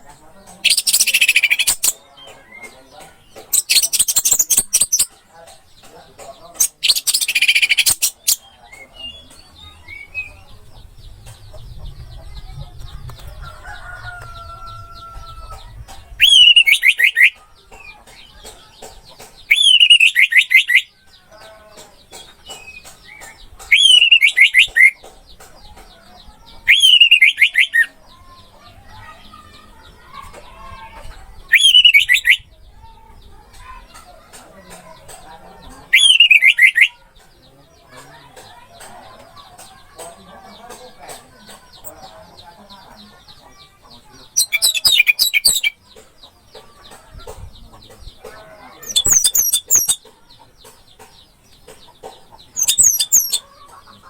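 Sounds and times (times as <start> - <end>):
harsh buzzy bird calls: 0.6 - 2.0, 6.6 - 8.4, 35.9 - 37.5, 44.3 - 45.9, 51.8 - 54.0.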